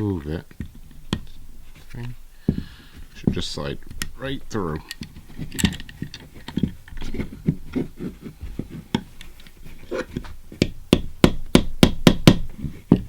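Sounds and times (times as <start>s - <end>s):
plastic and metal parts knocking: 0.4s - 1.4s, 2.0s - 13.0s
plastic housing clicking: 4.8s - 7.0s.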